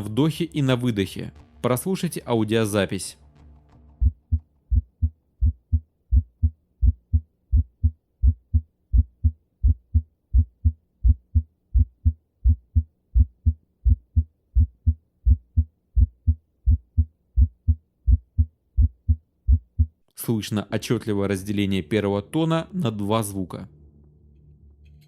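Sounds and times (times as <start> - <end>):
heartbeat thumps: 4.0 - 20.0.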